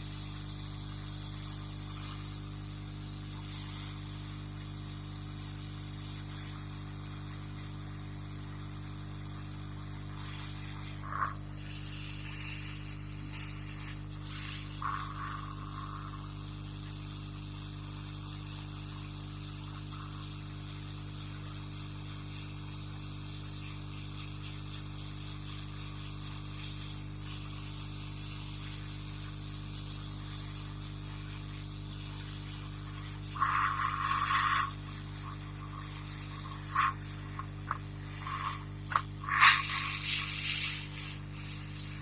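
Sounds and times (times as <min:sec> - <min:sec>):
low electrical hum: 0:00.0 - 0:42.0
hot air gun hissing: 0:08.4 - 0:17.2, 0:18.3 - 0:42.0.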